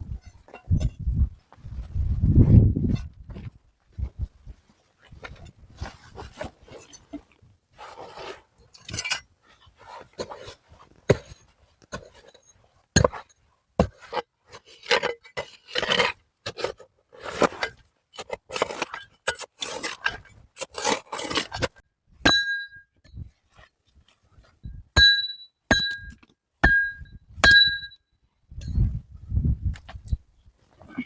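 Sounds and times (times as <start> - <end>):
scraping of hard material: 5.1 - 21.8
sharp ringing knocks on stone: 22.3 - 22.8, 25.0 - 28.0.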